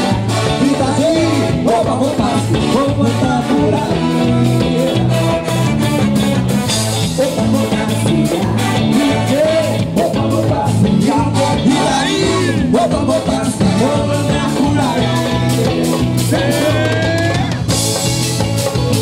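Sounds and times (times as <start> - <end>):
person singing: 0.0 - 5.7, 6.9 - 17.8
live band playing upbeat song: 0.0 - 19.0.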